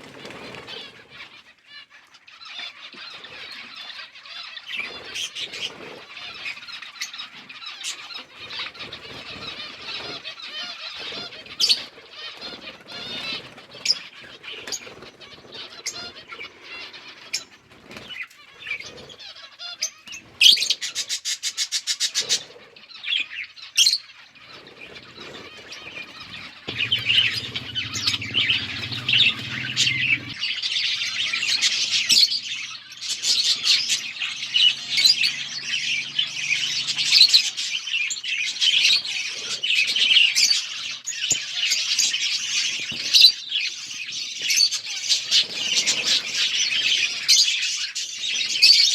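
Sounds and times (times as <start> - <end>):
budgies chirping and chattering: 0.0 - 48.9
low steady hum: 26.6 - 32.1.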